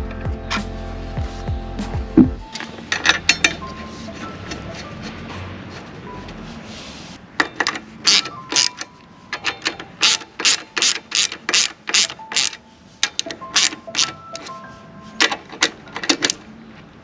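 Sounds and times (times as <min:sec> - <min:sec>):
ratchet wrench clicking: 0:07.6 - 0:14.2.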